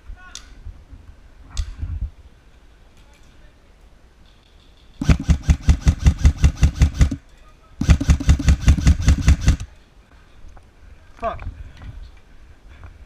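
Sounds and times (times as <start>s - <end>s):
airsoft rifle rapid firing: 5.0s - 7.2s, 7.8s - 9.7s.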